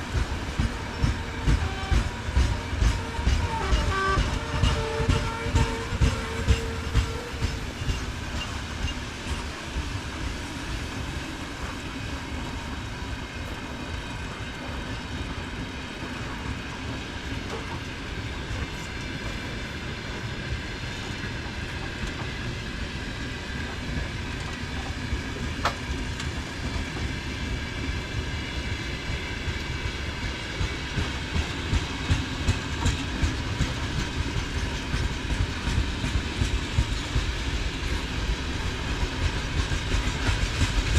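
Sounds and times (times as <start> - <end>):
freight train rumbling past: 0.0 - 40.9
wheels clacking over rail joints: 0.1 - 9.5.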